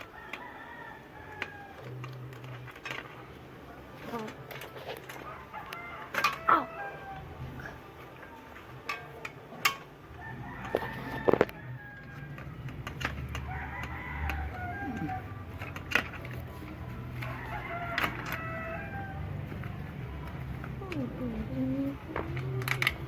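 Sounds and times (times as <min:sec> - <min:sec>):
rooster crowing: 0:00.0 - 0:02.1, 0:05.1 - 0:07.9, 0:10.1 - 0:20.0.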